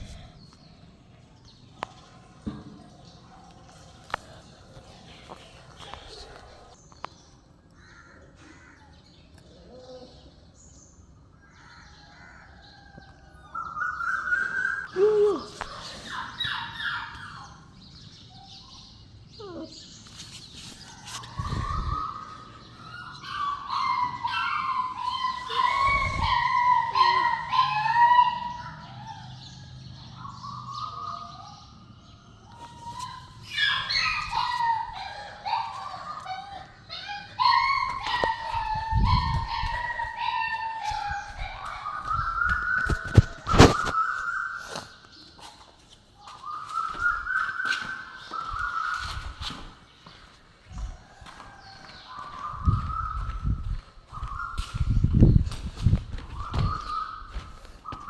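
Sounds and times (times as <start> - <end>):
puppies whining and squealing: 13.5 - 17.8, 19.4 - 29.3, 32.6 - 45.6, 46.2 - 49.8, 50.8 - 58.0.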